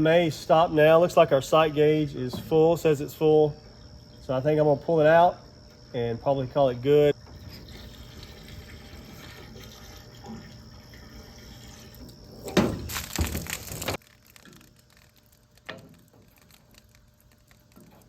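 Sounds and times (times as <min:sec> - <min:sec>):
hose water running into tank: 0:07.2 - 0:18.0.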